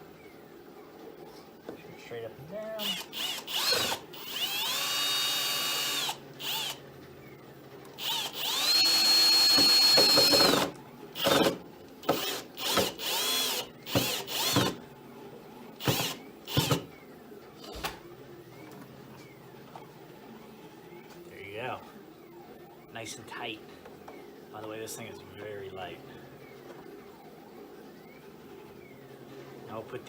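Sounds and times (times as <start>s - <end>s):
power drill driving a screw: 2.8s - 6.8s, 8.0s - 14.8s, 15.8s - 16.9s.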